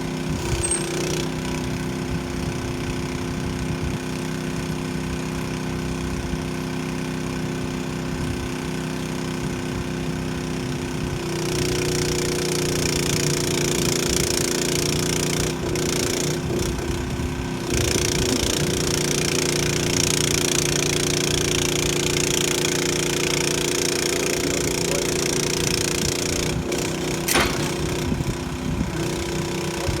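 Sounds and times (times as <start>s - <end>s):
engine running: 0.0s - 30.0s
sharp knock: 27.3s - 28.0s.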